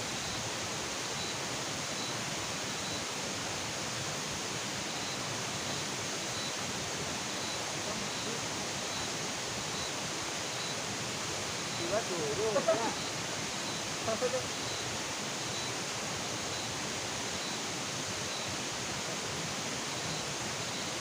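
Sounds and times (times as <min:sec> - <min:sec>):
night ambience hiss: 0:00.0 - 0:21.0
faint high chirp: 0:01.2 - 0:01.4, 0:02.0 - 0:03.2, 0:04.8 - 0:06.6, 0:07.3 - 0:10.8, 0:11.7 - 0:18.6, 0:19.8 - 0:21.0.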